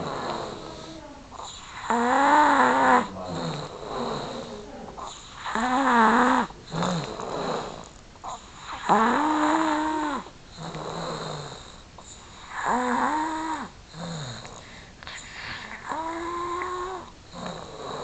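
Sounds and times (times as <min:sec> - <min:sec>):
pet snoring: 0:00.0 - 0:18.0.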